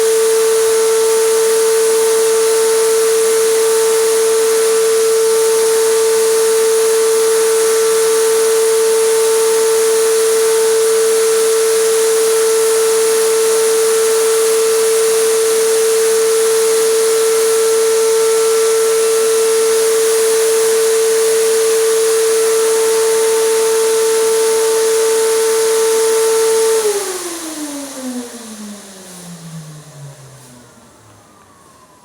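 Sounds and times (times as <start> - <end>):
air compressor whining: 0.0 - 32.0.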